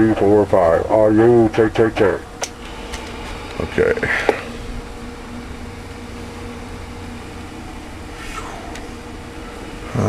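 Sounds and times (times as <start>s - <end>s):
low electrical hum: 0.0s - 10.0s.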